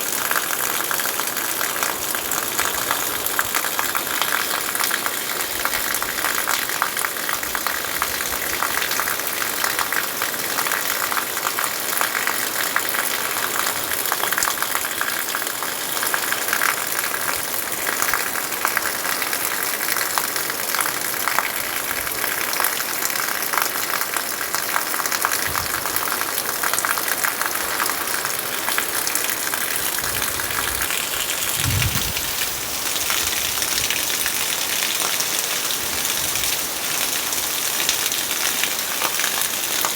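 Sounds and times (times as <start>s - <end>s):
heavy rain pouring: 0.0s - 39.9s
low thud: 25.4s - 26.2s, 31.5s - 32.5s.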